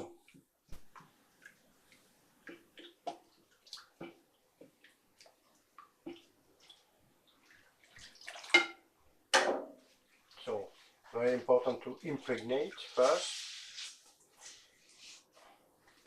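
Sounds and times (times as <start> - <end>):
water dripping: 0.1 - 9.1, 9.9 - 13.4
water splash: 7.8 - 8.8.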